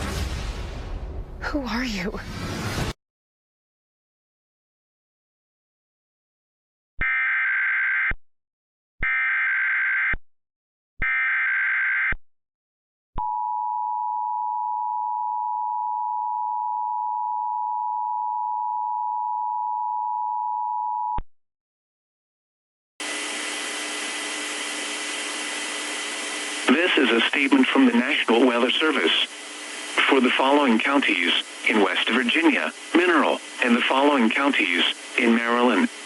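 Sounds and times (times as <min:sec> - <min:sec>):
static hiss: 0:23.0 - 0:36.0.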